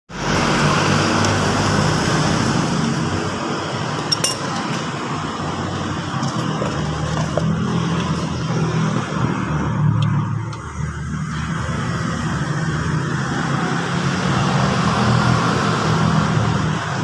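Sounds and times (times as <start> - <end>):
sharp metallic clink: 4.0 - 4.6.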